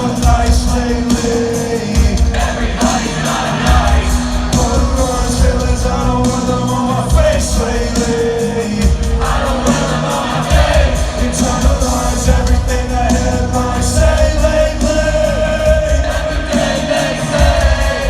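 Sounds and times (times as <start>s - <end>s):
live rock band playing: 0.0s - 18.0s
person singing: 0.0s - 18.0s
crowd shouting along: 2.2s - 6.9s, 9.1s - 18.0s.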